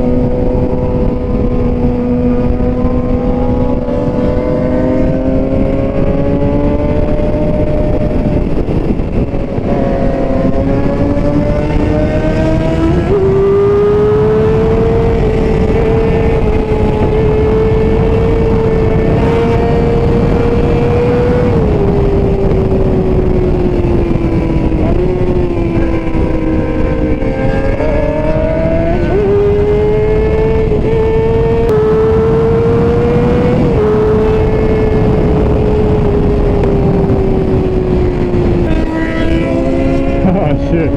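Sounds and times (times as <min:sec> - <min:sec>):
motorcycle engine running: 0:00.0 - 0:40.9
wind rush: 0:00.0 - 0:40.9.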